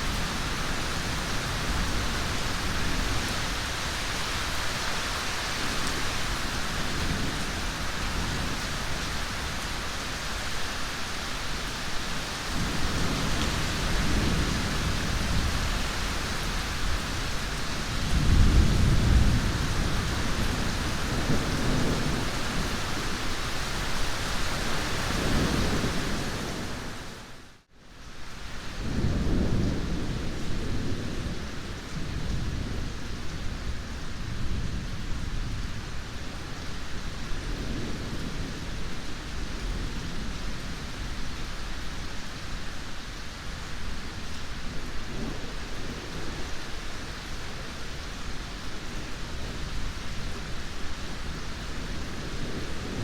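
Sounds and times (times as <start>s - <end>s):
heavy rain: 0.0s - 53.0s
rolling thunder: 12.5s - 23.2s.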